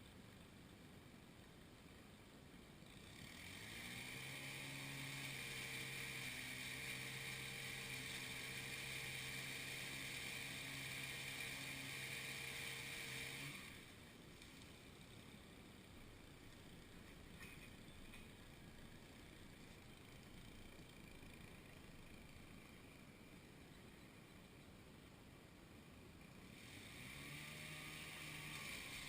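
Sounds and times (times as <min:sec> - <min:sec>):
engine running: 0:02.8 - 0:24.2, 0:26.3 - 0:29.0.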